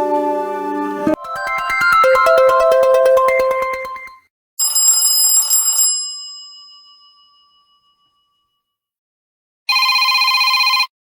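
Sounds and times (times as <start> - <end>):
fluttering electronic tone: 1.0 - 4.1
bell-like phone chime: 1.1 - 6.2.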